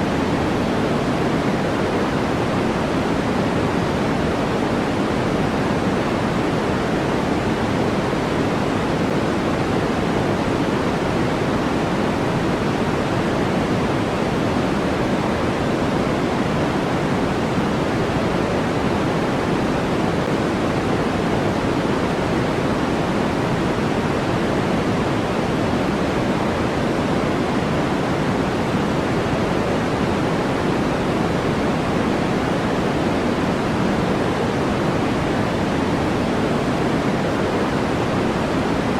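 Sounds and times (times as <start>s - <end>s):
steady pink noise hiss: 0.0s - 38.9s.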